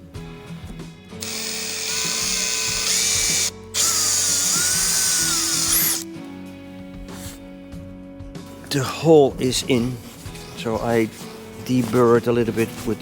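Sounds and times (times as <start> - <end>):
power drill squealing: 1.2 - 6.0.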